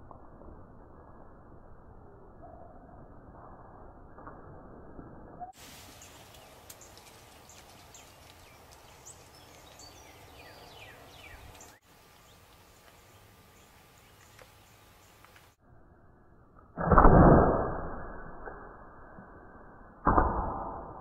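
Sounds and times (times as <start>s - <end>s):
small birds chirping: 5.5s - 15.6s.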